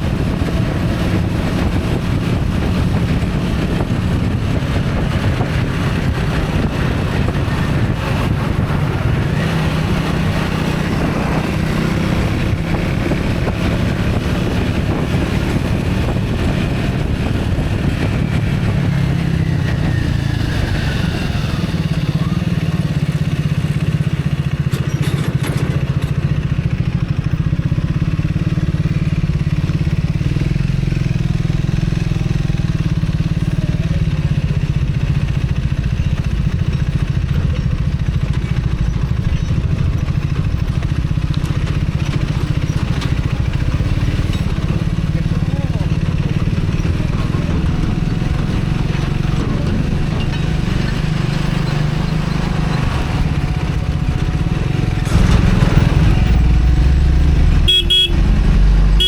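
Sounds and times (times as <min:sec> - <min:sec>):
traffic noise: 0:00.0 - 0:59.0
vehicle engine running: 0:00.0 - 0:59.0.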